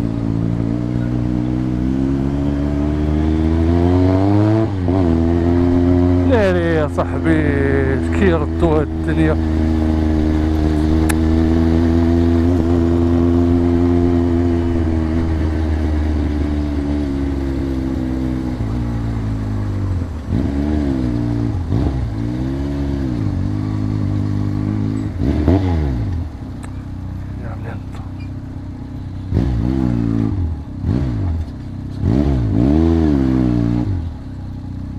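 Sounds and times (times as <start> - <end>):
motorcycle engine running: 0.0 - 34.9.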